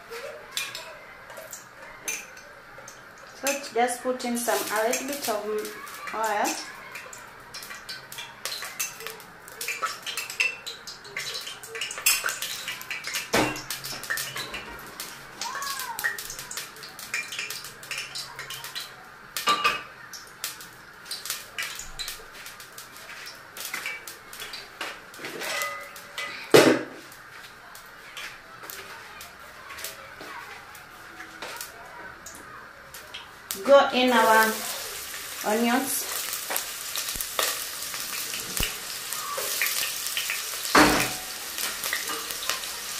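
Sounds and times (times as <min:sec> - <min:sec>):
pots and utensils clinking: 0:00.1 - 0:27.0, 0:33.0 - 0:42.9.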